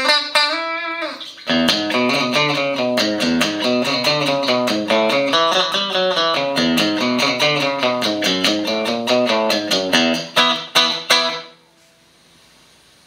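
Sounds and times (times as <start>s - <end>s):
sharp guitar hits: 0.0s - 11.8s
electric guitar picked notes: 0.0s - 12.0s.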